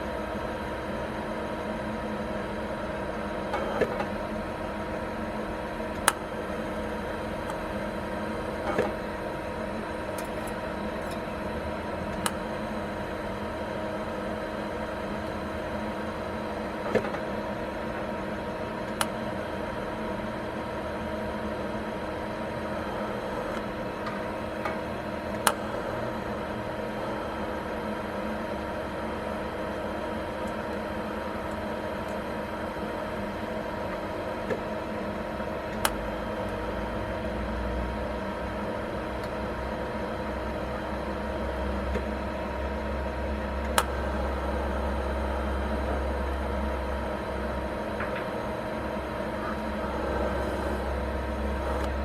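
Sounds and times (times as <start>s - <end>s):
steady machine hum: 0.0s - 52.0s.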